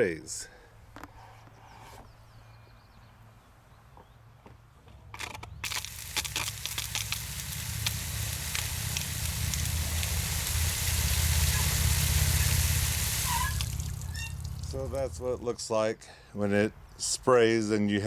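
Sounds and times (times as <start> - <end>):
lawn tractor engine running: 5.2 - 15.5
mower blade hum: 5.2 - 15.6
water spraying hiss: 5.6 - 15.5
water ticks: 5.6 - 15.5.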